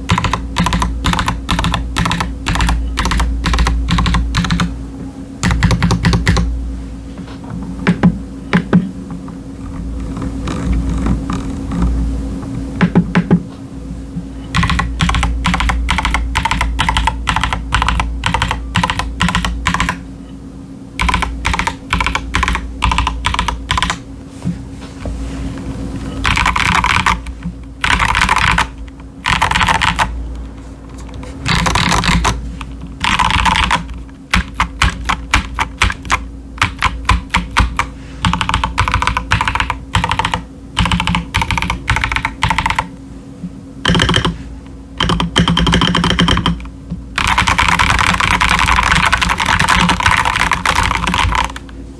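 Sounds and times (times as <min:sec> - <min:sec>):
mechanical keyboard keys clacking: 0:00.0 - 0:04.7, 0:05.4 - 0:06.5, 0:14.5 - 0:20.0, 0:21.0 - 0:24.0, 0:26.2 - 0:30.2, 0:31.0 - 0:42.9, 0:43.9 - 0:44.4, 0:45.0 - 0:51.7.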